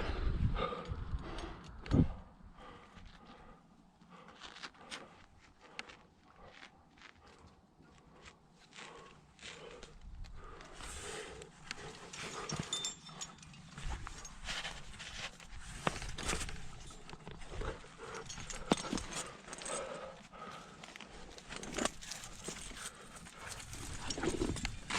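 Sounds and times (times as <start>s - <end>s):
person breathing hard: 0.0s - 14.4s, 17.4s - 21.5s.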